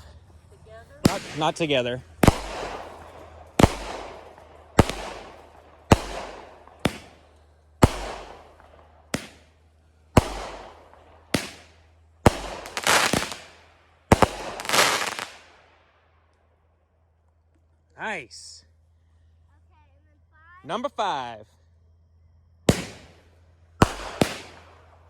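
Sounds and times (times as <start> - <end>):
firework shots: 0.9 - 16.0, 22.7 - 25.0.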